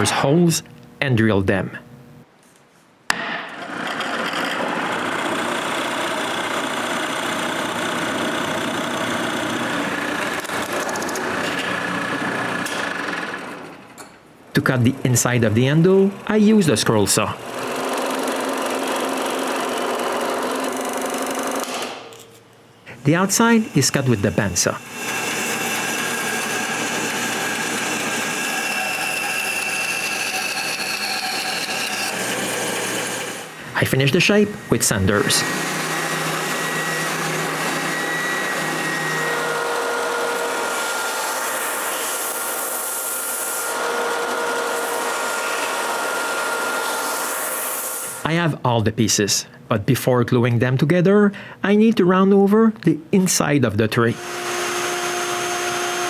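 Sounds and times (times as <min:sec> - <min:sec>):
bandsaw cutting wood: 0:03.6 - 0:13.8, 0:14.6 - 0:21.9, 0:22.9 - 0:48.3, 0:54.1 - 0:56.0
power drill boring into wood: 0:03.7 - 0:13.5, 0:23.0 - 0:33.8, 0:34.5 - 0:47.4, 0:54.1 - 0:56.0.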